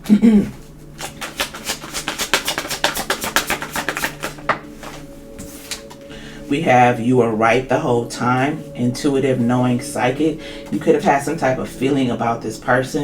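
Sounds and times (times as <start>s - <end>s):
soft background music: 0.0s - 13.0s
cards being shuffled: 0.5s - 6.0s.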